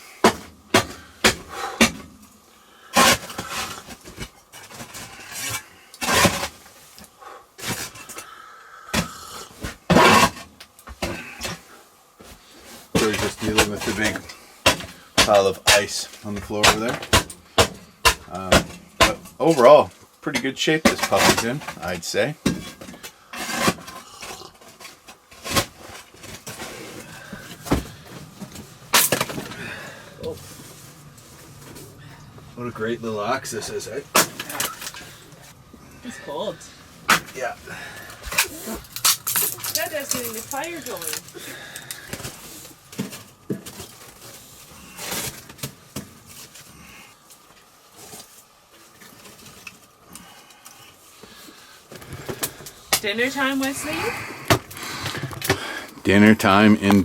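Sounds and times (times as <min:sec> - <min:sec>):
knocks bangs and scrapes: 0:12.9 - 0:19.6, 0:20.4 - 0:24.0.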